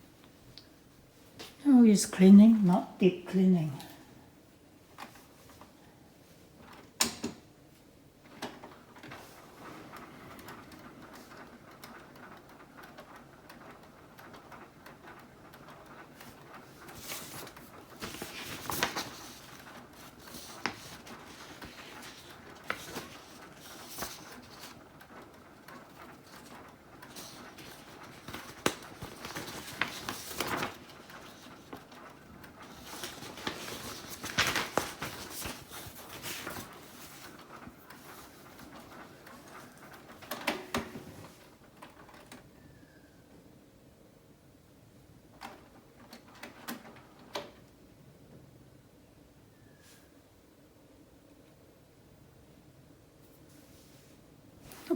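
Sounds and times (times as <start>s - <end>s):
printer mechanical whir: 6.5s - 43.9s
printer clicks and clunks: 6.6s - 7.6s, 8.2s - 42.5s, 45.2s - 47.8s.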